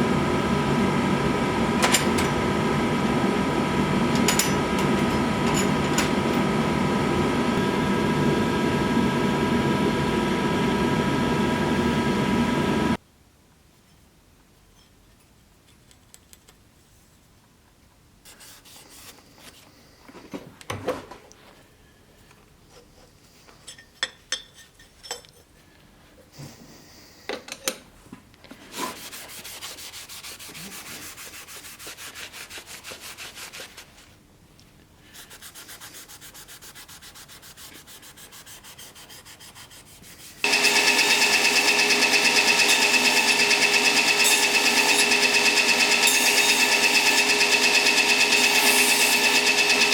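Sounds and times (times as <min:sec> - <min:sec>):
sanding a knife blade: 0:28.8 - 0:33.9, 0:35.1 - 0:49.9
power tool whining: 0:40.4 - 0:49.9.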